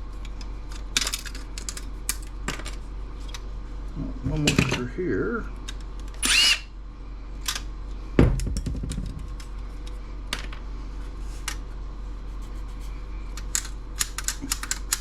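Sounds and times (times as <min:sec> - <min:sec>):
low thud: 0:08.2 - 0:09.3.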